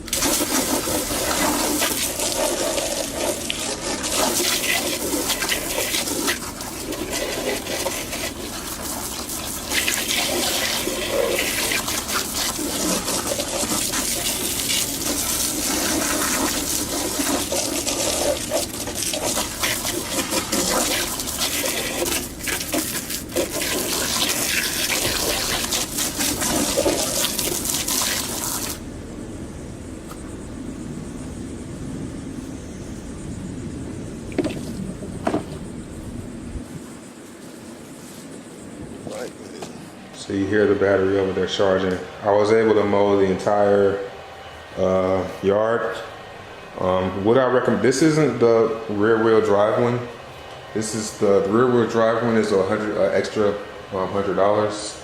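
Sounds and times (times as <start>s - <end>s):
water spraying from a hose: 0.0s - 28.8s.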